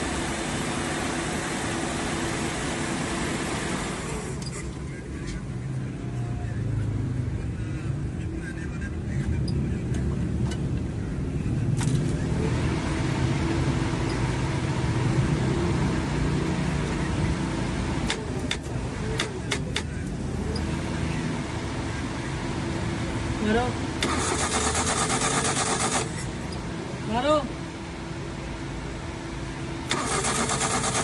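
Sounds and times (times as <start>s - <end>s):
car engine running: 0.0s - 31.0s
sharp clicks: 18.0s - 19.9s.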